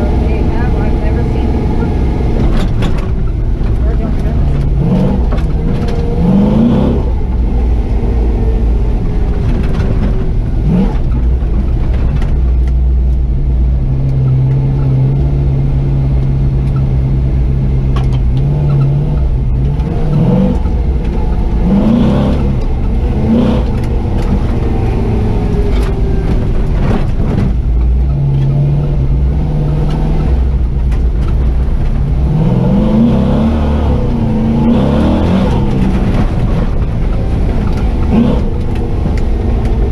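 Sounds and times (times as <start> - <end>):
truck engine accelerating through gears: 0.0 - 39.9.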